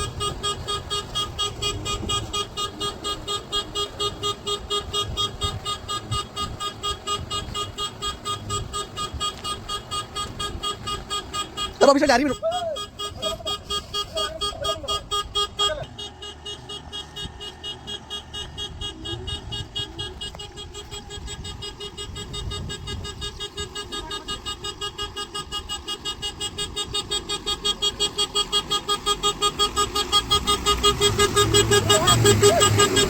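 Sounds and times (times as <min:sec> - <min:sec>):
diesel engine rumble: 0:00.0 - 0:33.0.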